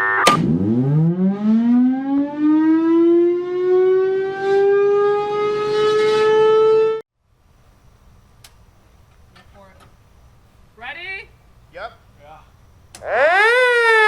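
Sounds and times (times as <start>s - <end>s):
siren winding up into a wail: 0.0s - 7.0s, 13.0s - 14.0s.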